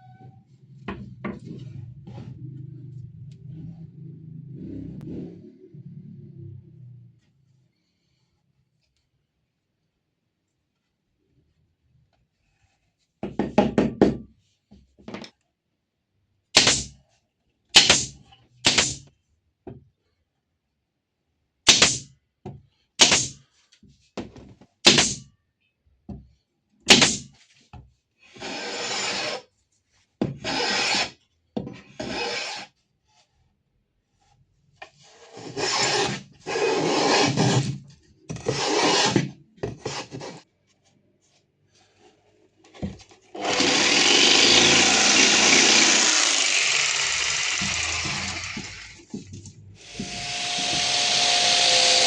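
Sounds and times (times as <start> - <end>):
rasping filing strokes: 28.3 - 29.5, 30.4 - 31.2, 31.9 - 32.8, 35.0 - 37.7, 38.4 - 40.4.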